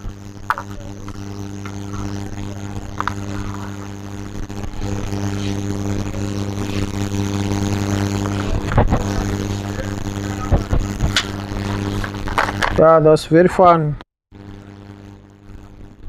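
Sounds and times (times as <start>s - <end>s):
buzzy electrical mains hum: 0.0s - 16.0s.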